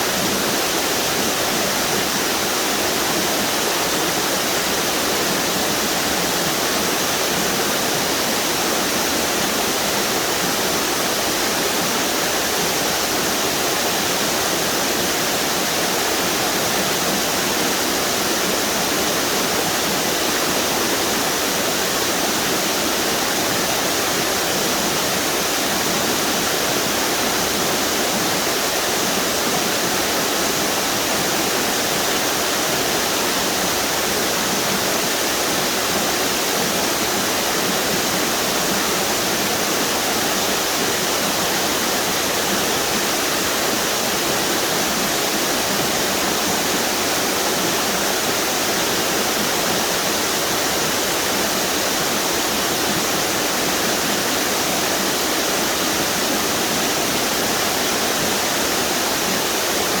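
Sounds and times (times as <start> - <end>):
waterfall rushing: 0.0 - 60.0.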